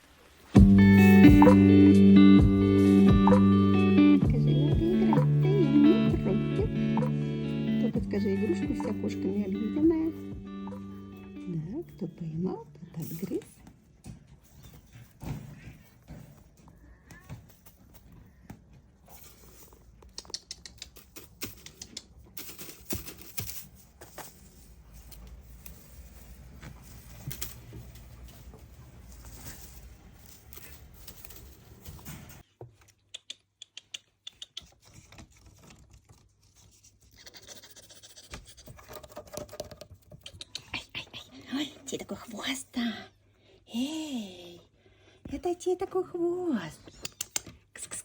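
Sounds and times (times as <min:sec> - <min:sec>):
light clicks and scratching: 0:12.9 - 0:42.3.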